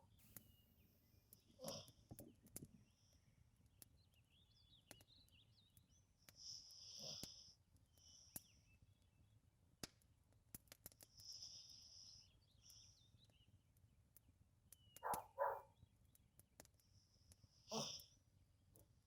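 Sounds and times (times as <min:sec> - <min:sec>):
dog breathing softly: 0:15.0 - 0:15.6
dog snuffles: 0:15.0 - 0:15.6.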